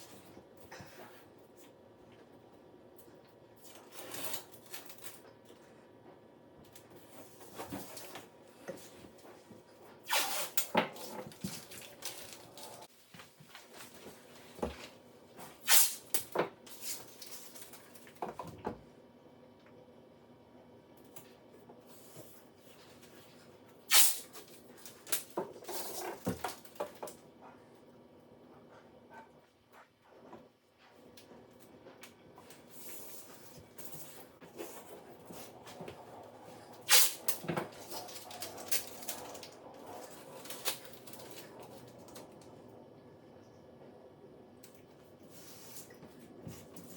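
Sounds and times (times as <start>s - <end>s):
tape unrolling: 10.1s - 12.9s, 15.6s - 17.6s, 23.9s - 26.6s, 36.8s - 39.5s.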